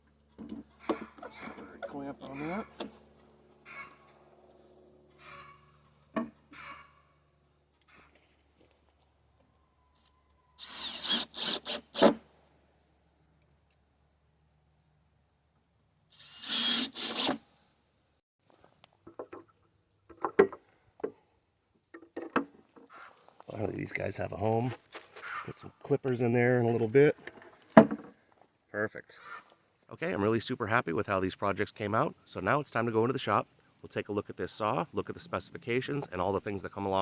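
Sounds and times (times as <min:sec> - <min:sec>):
high insect buzz: 0:00.0 - 0:09.1, 0:10.5 - 0:18.7
power tool working on wood: 0:10.6 - 0:12.2, 0:16.2 - 0:17.4.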